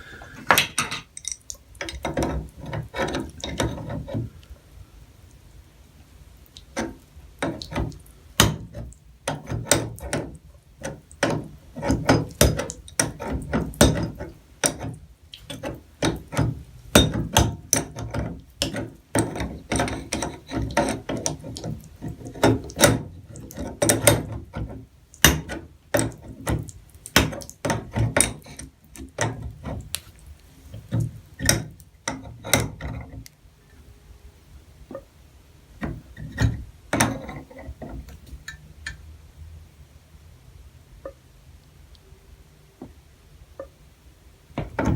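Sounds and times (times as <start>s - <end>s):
metallic clicks and knocks of tools: 0.5s - 4.3s, 6.8s - 29.9s.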